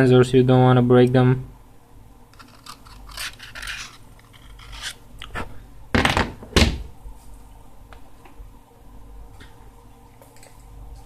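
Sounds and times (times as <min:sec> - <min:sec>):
knife scraping adhesive: 0:02.4 - 0:05.0.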